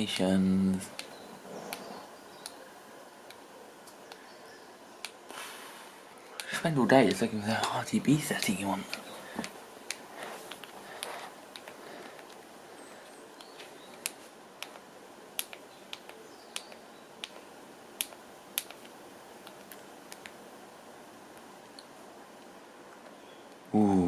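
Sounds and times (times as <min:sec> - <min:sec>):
faint room hiss: 0:00.0 - 0:24.0
computer mouse clicking: 0:08.4 - 0:12.4, 0:15.4 - 0:20.4.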